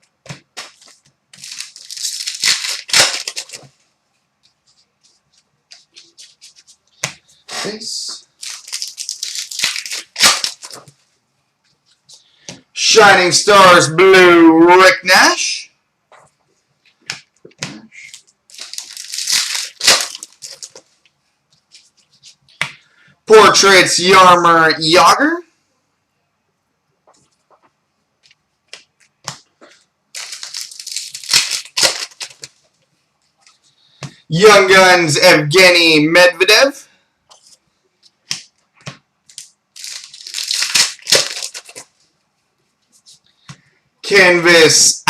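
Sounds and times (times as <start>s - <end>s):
cards being handled: 0.2s - 3.8s, 4.4s - 12.6s, 16.2s - 22.8s, 27.1s - 32.6s, 37.3s - 42.0s
foil wrapper tearing and crinkling: 0.6s - 3.7s, 8.2s - 10.9s, 18.1s - 20.8s, 30.1s - 32.6s, 39.3s - 41.9s.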